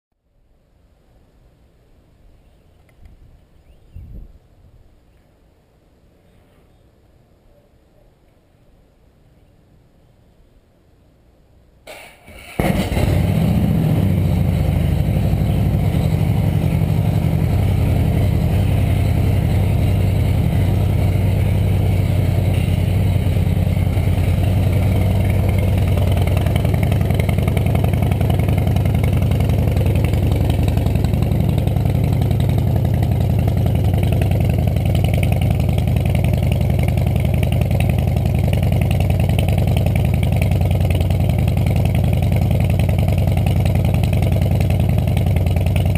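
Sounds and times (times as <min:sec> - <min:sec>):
motorcycle engine idling: 0:12.6 - 0:45.9.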